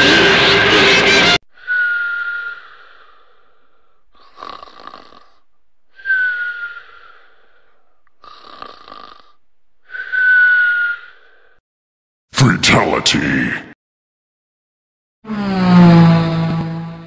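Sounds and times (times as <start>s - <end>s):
whistling breath: 1.5s - 4.0s, 5.9s - 7.9s, 9.8s - 11.6s
cartoon snoring: 4.1s - 7.3s, 8.2s - 10.5s, 15.3s - 16.8s.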